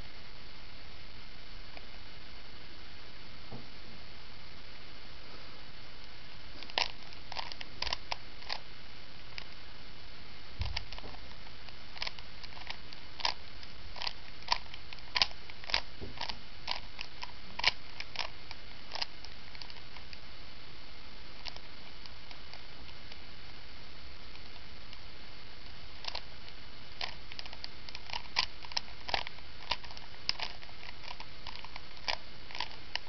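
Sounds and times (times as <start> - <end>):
plastic puzzle cube clicking: 6.6 - 8.6, 12.0 - 20.2, 26.0 - 26.3, 27.0 - 33.0.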